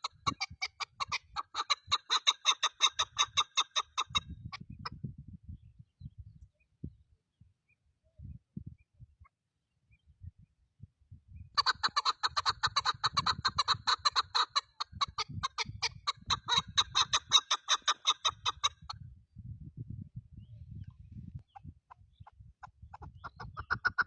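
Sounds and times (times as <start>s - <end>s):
partridge clucking calls: 0.0s - 5.0s, 11.6s - 19.0s, 21.4s - 24.0s.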